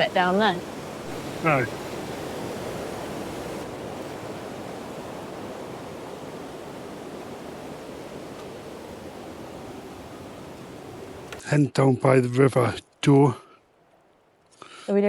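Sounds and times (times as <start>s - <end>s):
river rapids rushing: 0.0s - 11.4s.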